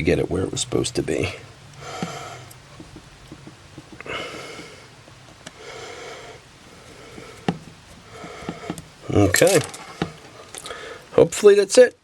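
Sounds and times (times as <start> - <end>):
breathing through the nose: 1.8 - 2.5, 4.0 - 4.9, 5.6 - 8.8, 10.6 - 11.1.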